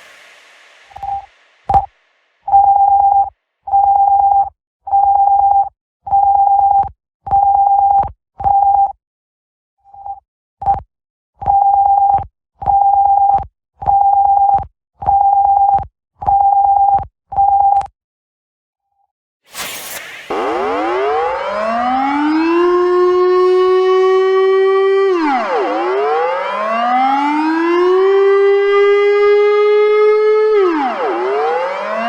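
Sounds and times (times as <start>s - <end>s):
emergency alert beeps: 20.3s - 24.0s.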